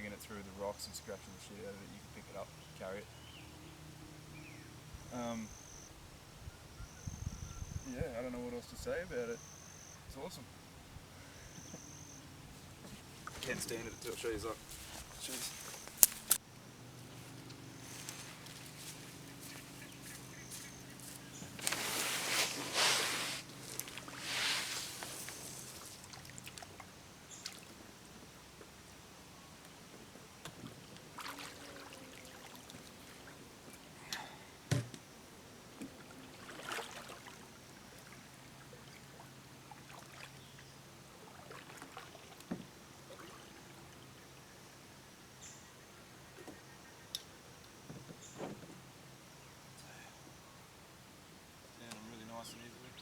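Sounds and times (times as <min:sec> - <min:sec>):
paddle strokes splashing: 0:12.5 - 0:16.4, 0:17.0 - 0:27.8, 0:30.6 - 0:34.2, 0:35.8 - 0:44.1.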